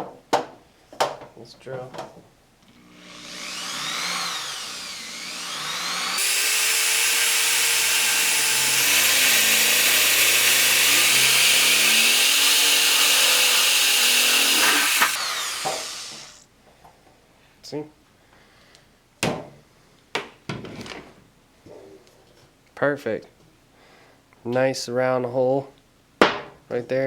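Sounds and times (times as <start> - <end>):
power drill boring: 2.7 - 16.4.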